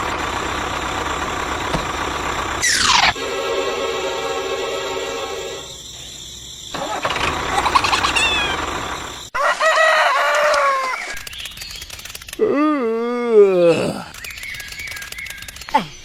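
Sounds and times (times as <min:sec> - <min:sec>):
chickens calling: 0:06.7 - 0:11.8
rooster crowing: 0:09.3 - 0:11.1.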